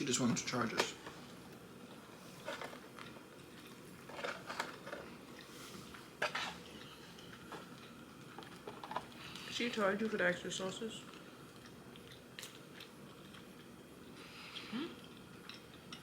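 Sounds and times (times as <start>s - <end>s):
chewing: 1.8s - 9.6s, 11.0s - 16.0s.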